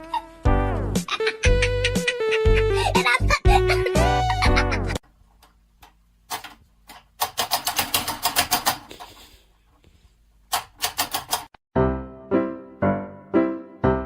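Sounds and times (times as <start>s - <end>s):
background music: 0.0s - 5.0s, 11.8s - 14.0s.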